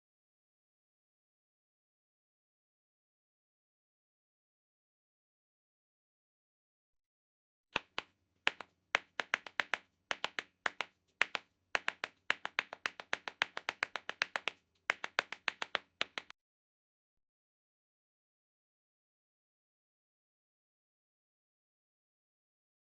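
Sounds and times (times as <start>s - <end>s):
tap shoes clicking on hard floor: 7.8s - 16.3s.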